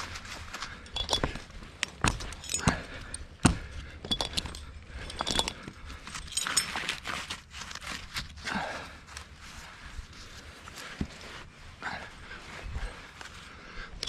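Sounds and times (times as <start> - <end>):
metal hardware jingling: 0.6 - 7.4.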